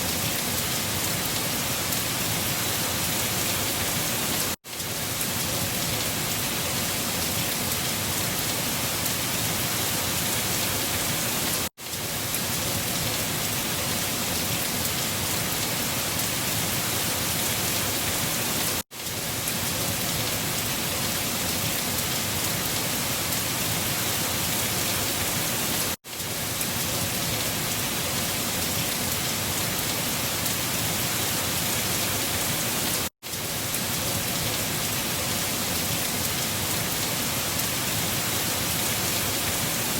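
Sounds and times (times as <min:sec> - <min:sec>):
rain: 0:00.0 - 0:39.9
wind: 0:00.0 - 0:39.9.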